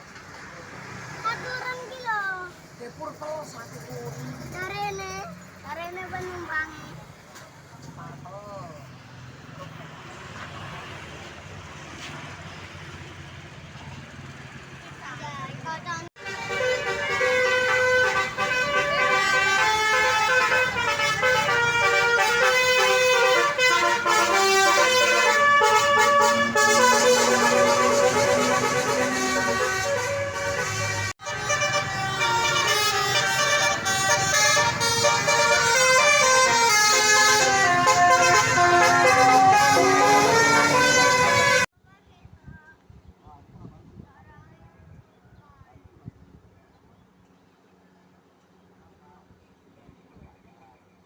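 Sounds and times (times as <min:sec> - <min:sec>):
bus horn playing fast melody: 0:16.2 - 0:41.7.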